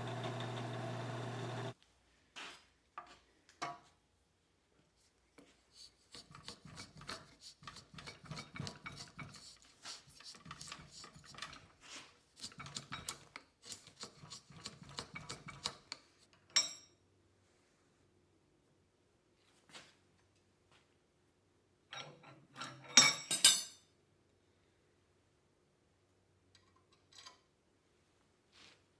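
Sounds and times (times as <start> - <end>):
file rasping on steel blade: 6.1 - 11.6, 12.4 - 15.7
sharp metallic clink: 23.0 - 23.8.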